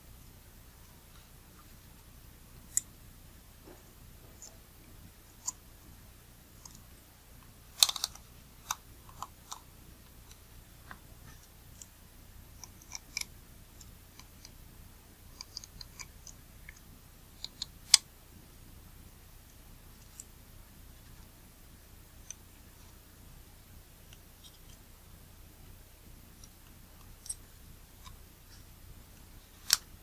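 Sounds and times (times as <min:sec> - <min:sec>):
metal lens parts clicking: 0:07.8 - 0:09.6.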